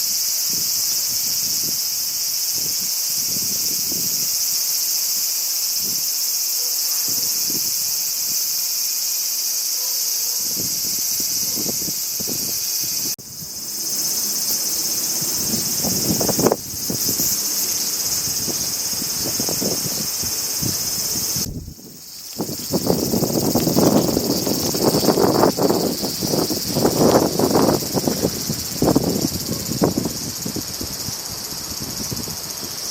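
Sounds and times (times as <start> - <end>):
crickets chirping: 0.0 - 32.9
wind buffeting microphone: 10.5 - 32.9.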